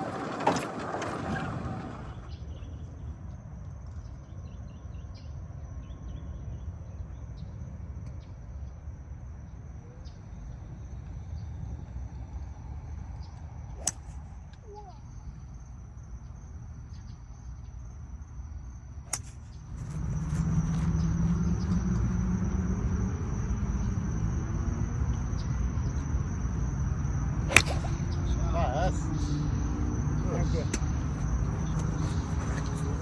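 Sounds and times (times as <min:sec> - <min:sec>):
low motor hum: 0:00.0 - 0:03.1, 0:19.1 - 0:33.0
high insect tone: 0:13.0 - 0:33.0
golf club striking ball: 0:13.8 - 0:14.1, 0:19.1 - 0:19.5, 0:27.4 - 0:28.4.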